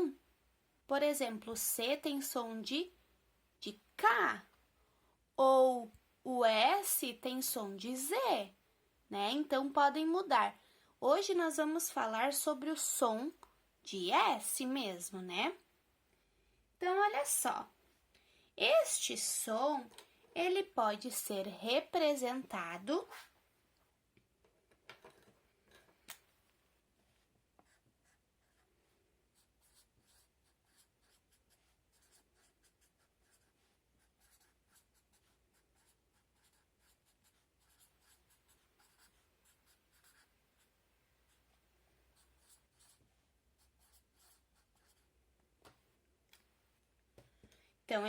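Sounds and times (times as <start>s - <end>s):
pen scratching while handwriting: 29.3s - 40.3s.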